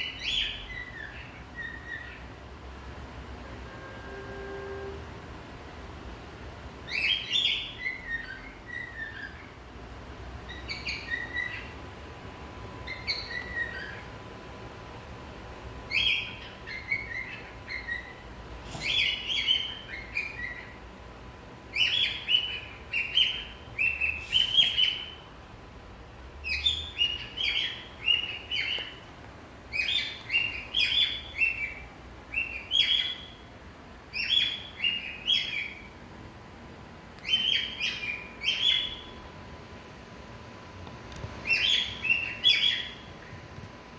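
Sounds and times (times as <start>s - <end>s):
cockatiel whistling chirps: 12.8s - 14.0s, 29.7s - 33.4s, 37.2s - 39.1s, 41.4s - 43.0s.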